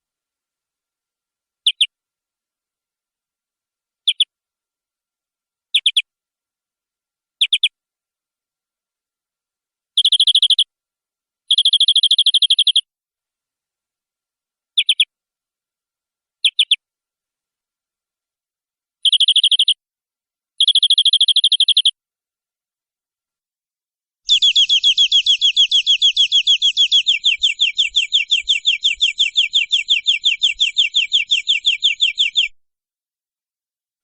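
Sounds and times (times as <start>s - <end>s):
canary singing: 1.6s - 1.9s, 14.8s - 15.1s, 19.0s - 19.8s, 20.6s - 22.0s, 24.3s - 32.6s.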